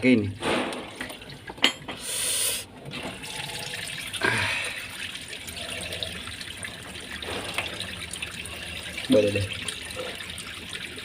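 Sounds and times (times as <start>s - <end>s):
water running and splashing: 2.9s - 11.0s.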